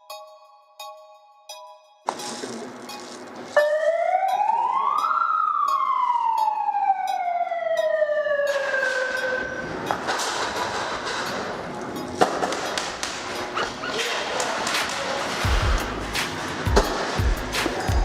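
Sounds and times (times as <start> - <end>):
rustling and movement noise: 2.1 - 3.9, 8.8 - 17.8
siren winding up and down: 3.5 - 10.1.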